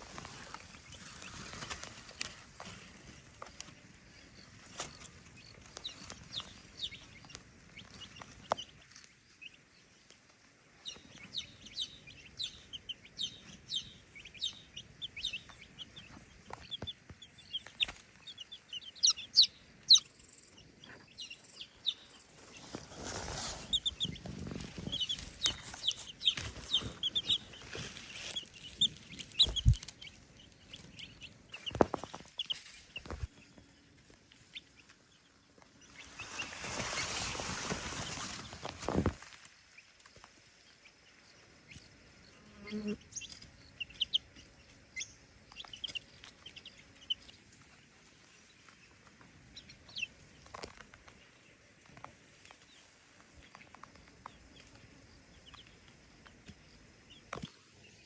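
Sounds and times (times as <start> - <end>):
rustling: 0.0 - 3.9, 16.2 - 33.4, 35.9 - 40.4
chickens calling: 0.0 - 58.0.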